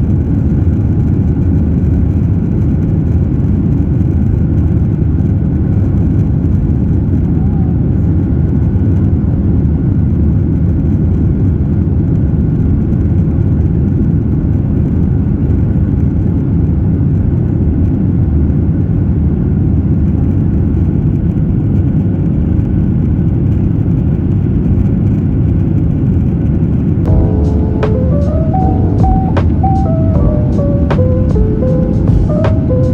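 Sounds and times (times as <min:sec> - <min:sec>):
faint steady tones: 0:27.1 - 0:32.9.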